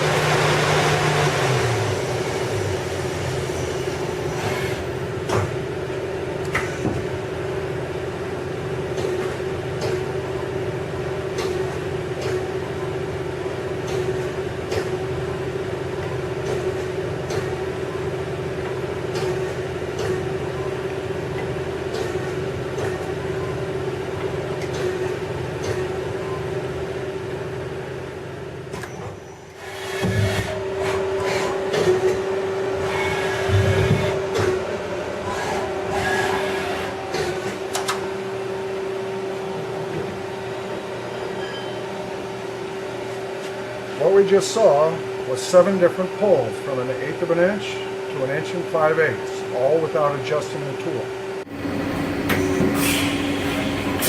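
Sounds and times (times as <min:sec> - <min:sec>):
lathe machine hum: 0:00.0 - 0:06.4, 0:29.6 - 0:41.1, 0:51.1 - 0:54.0.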